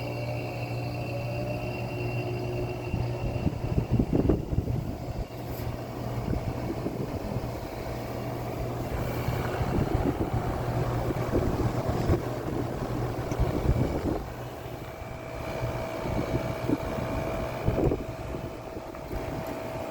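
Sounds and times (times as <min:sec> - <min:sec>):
heat pump humming: 0:00.0 - 0:19.9
steady higher tones: 0:00.0 - 0:19.9
uneven rumble: 0:02.9 - 0:19.5.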